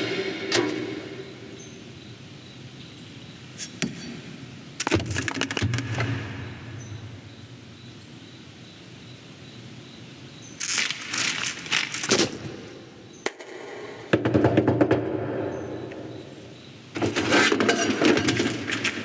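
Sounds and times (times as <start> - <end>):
crackling and crunching: 4.8 - 6.1, 10.6 - 13.5, 17.0 - 19.0.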